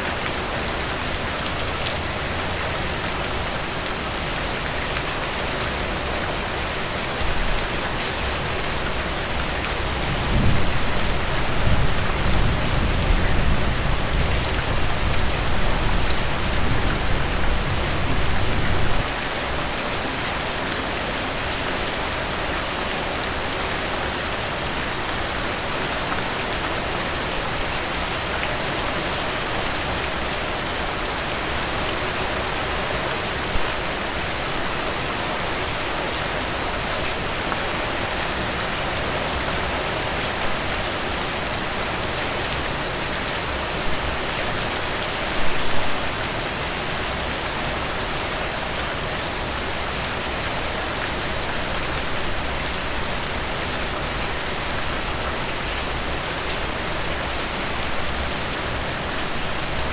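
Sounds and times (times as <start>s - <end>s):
heavy rain falling: 0.0s - 59.9s
low rumble of thunder: 10.0s - 19.0s.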